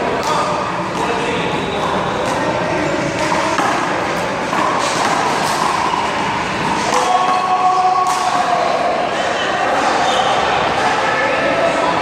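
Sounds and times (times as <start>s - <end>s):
steady humming tone: 0.0s - 9.8s
sharp ball slaps: 0.1s - 2.5s, 3.1s - 8.6s.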